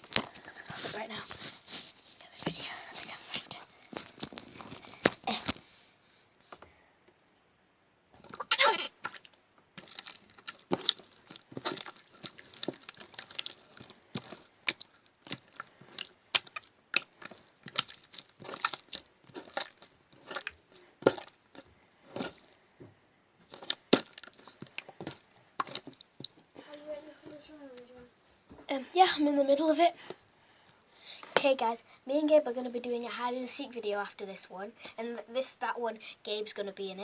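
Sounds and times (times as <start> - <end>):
slime squished by hand: 8.3 - 22.4.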